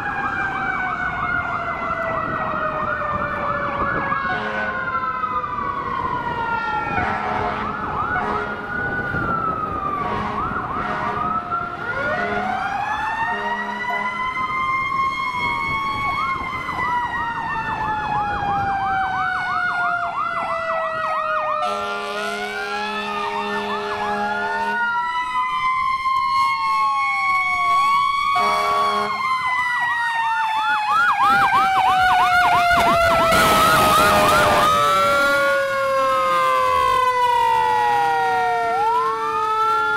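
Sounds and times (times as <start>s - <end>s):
fire engine sirens wailing: 0.0s - 39.9s
air horn blasts: 4.3s - 4.8s, 7.0s - 8.6s, 10.0s - 11.3s, 12.2s - 12.6s, 13.3s - 14.2s, 21.6s - 24.8s, 28.4s - 29.2s, 33.3s - 34.8s.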